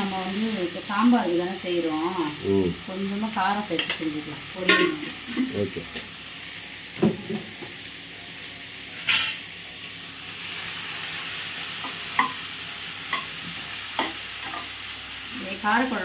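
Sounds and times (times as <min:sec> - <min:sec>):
stir-fry sizzling in a hot pan: 0:00.0 - 0:16.0
utensil scraping a pan: 0:09.0 - 0:09.5.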